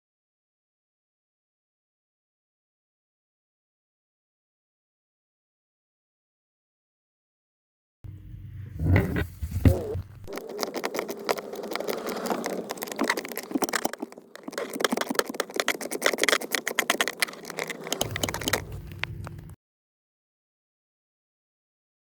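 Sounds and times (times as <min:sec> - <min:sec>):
low hum: 0:08.1 - 0:19.6
hard clicks and rattles: 0:10.3 - 0:19.6.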